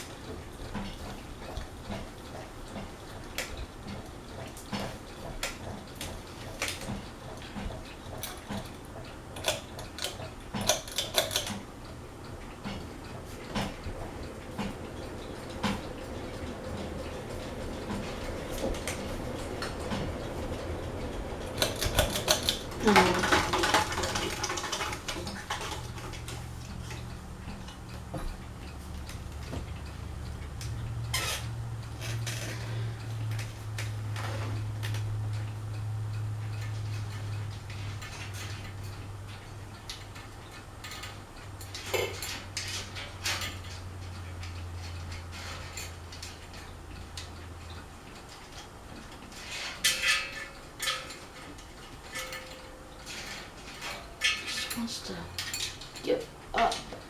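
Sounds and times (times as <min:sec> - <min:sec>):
ceiling fan motor hum: 0:00.0 - 0:57.0
light clinks and rattles: 0:12.6 - 0:35.5, 0:36.4 - 0:57.0.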